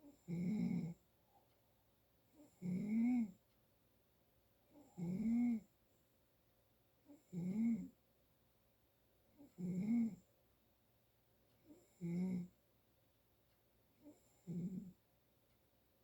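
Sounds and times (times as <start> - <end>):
person snoring: 0.2 - 1.0.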